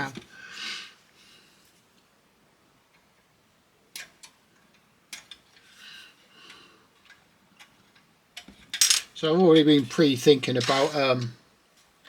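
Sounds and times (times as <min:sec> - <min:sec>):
scraping rustle: 0:09.9 - 0:11.4.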